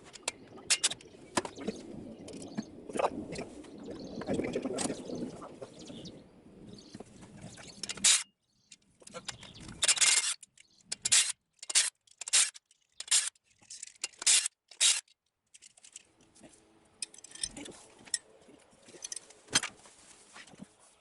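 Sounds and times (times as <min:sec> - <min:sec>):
rubbing and handling noises: 0:17.2 - 0:21.0.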